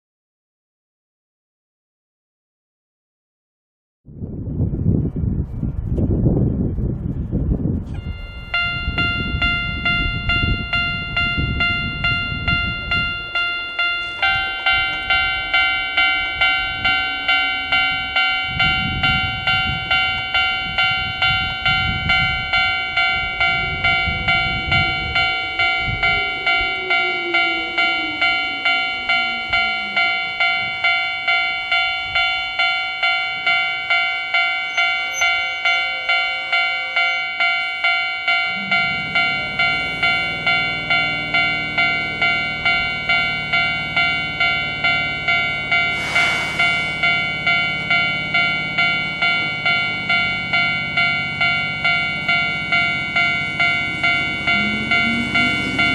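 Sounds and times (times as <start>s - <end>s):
wind buffeting microphone: 4.1s - 36.6s
level crossing alarm ringing: 8.0s - 55.9s.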